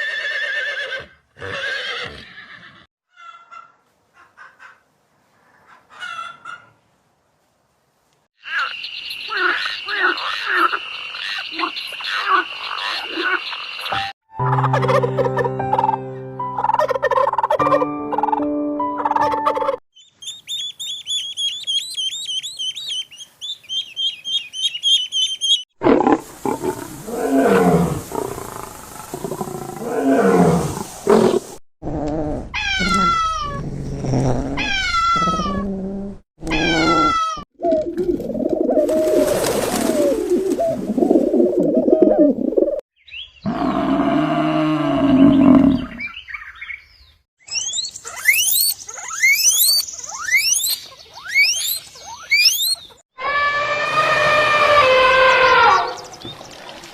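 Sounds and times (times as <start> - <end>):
big cats growling and roaring: 25.8 - 37.1.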